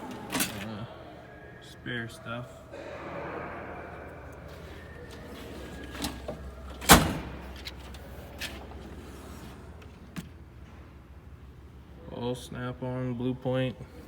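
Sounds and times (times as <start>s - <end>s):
metal drawers sliding and shutting: 0.0s - 0.8s, 4.3s - 10.4s.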